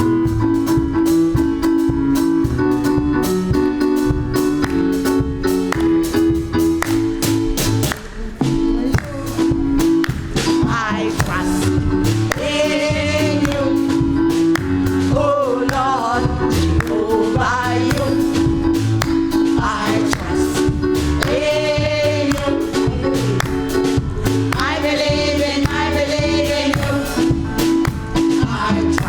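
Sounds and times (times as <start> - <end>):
instrumental accompaniment with beat: 0.0 - 29.0
group of singers: 8.1 - 29.0.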